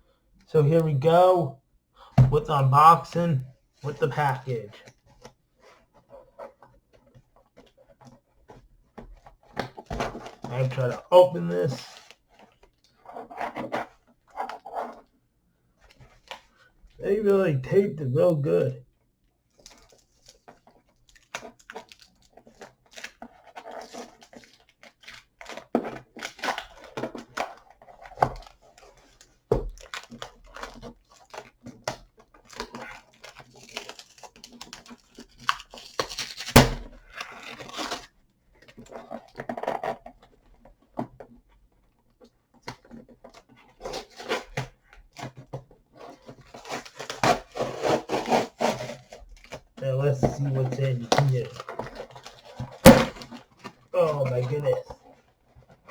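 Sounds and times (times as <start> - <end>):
packing tape and cardboard tearing: 32.4 - 38.1, 46.0 - 49.6, 50.4 - 53.4.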